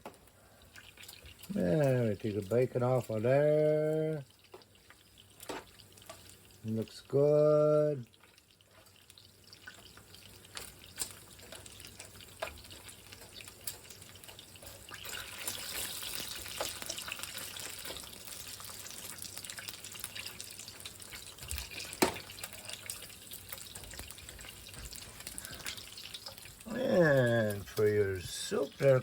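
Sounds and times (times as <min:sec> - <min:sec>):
bacon fat sizzling and spattering: 0:00.0 - 0:29.0.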